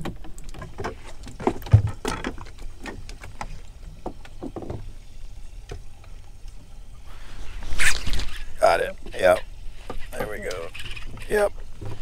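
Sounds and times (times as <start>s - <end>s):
low rumble of water and wind: 0.0s - 12.0s
knocks against boat hull: 1.4s - 3.0s.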